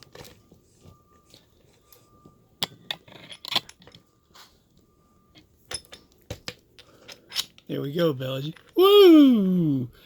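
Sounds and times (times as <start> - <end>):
lock picks clicking and scraping: 2.6 - 4.1, 5.3 - 7.8, 8.4 - 8.8.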